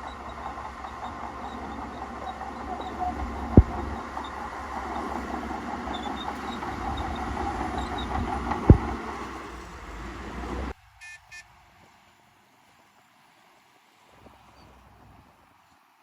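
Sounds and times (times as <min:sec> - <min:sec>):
sharp knocks: 0:00.0 - 0:10.7
bulldozer diesel engine: 0:00.0 - 0:10.8
tracks clattering: 0:00.0 - 0:10.8.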